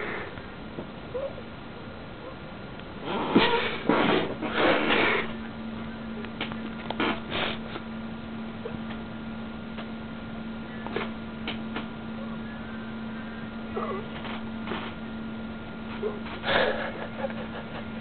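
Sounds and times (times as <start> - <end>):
steady low hum: 0.0 - 18.0
snuffles: 3.0 - 5.4, 7.0 - 7.8.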